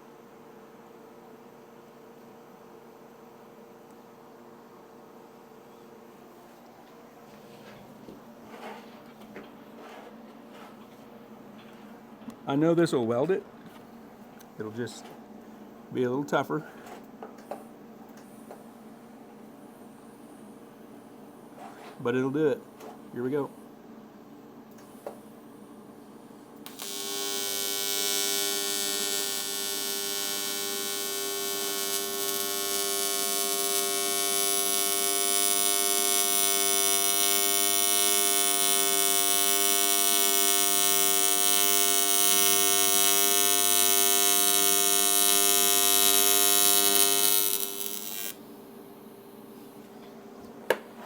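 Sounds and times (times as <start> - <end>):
welding arc buzzing: 26.6 - 48.5.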